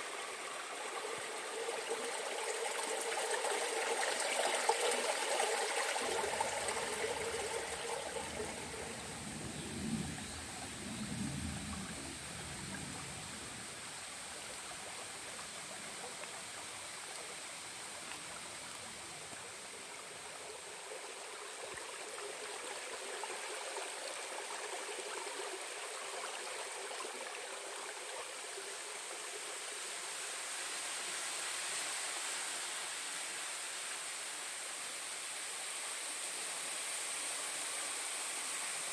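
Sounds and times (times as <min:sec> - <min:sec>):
stream rushing over rocks: 0:00.0 - 0:11.0
low rumbling: 0:08.2 - 0:13.8.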